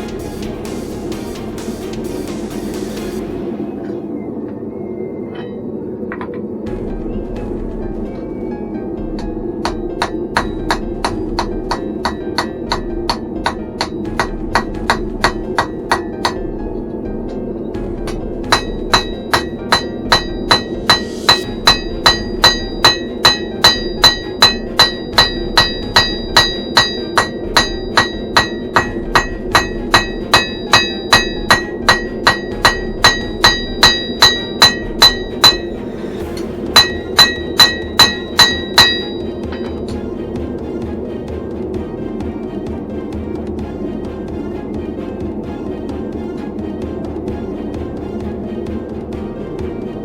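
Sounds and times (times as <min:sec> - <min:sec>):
hammer striking steel on anvil: 0:09.1 - 0:16.6, 0:18.0 - 0:40.1.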